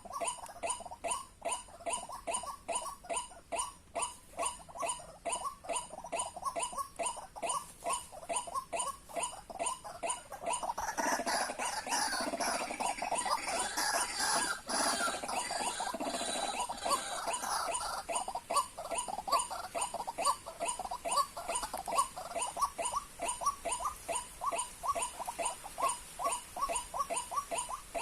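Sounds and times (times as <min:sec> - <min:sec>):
waterhens calling: 0:00.0 - 0:28.0.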